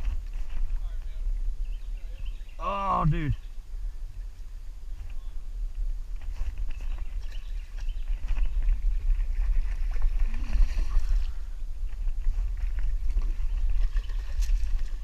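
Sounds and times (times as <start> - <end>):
kayak moving on water: 0.0 - 15.0.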